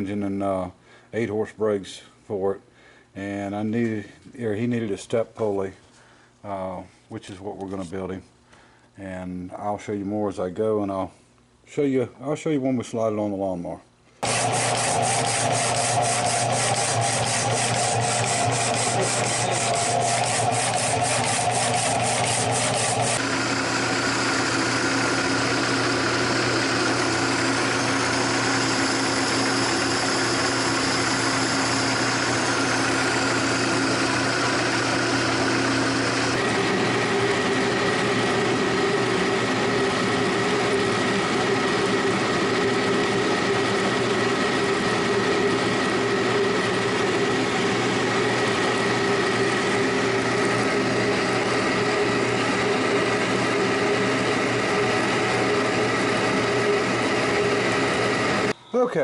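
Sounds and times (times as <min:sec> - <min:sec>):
machine tool cutting metal: 0:14.2 - 0:23.3
motor hum: 0:14.2 - 0:58.6.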